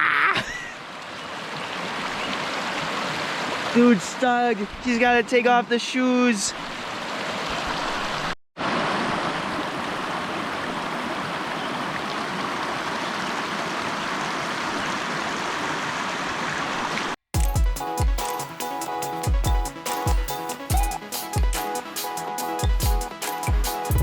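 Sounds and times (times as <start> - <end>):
creek water rushing: 0.7 - 17.2
music with deep bass hits: 22.6 - 24.0.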